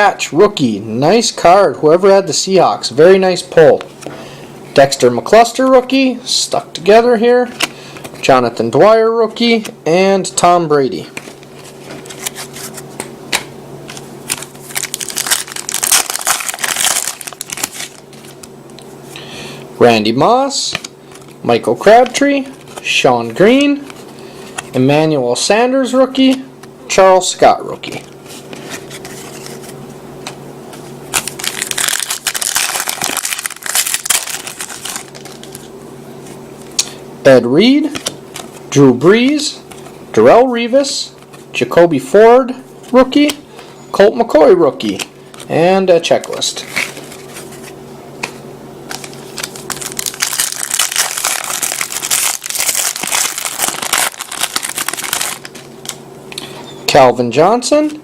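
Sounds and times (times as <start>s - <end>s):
faint steady hum: 0.0s - 58.0s
wrapper tearing and crinkling: 14.2s - 18.5s, 31.1s - 35.7s, 48.9s - 56.0s.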